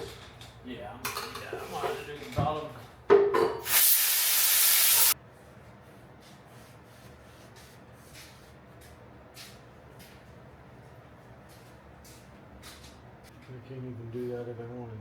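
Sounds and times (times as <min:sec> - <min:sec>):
pressurized spray hissing: 0:03.6 - 0:05.2.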